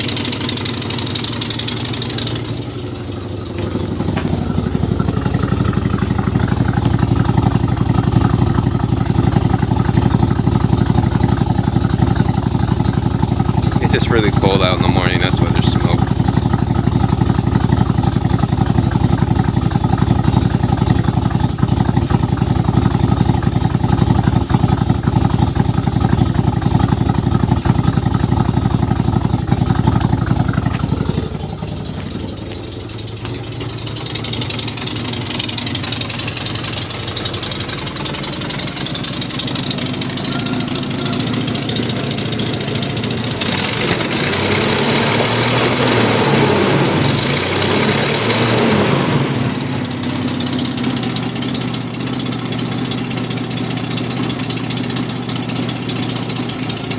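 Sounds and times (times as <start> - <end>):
car engine with exhaust leak: 0.0 - 56.9.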